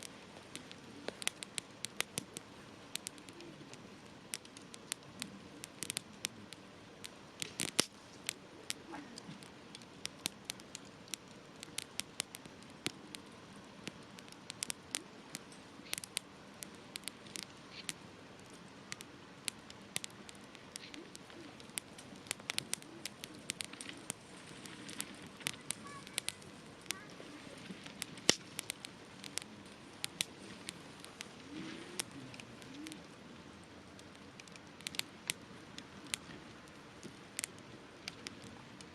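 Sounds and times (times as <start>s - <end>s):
campfire crackling and popping: 0.0s - 38.9s.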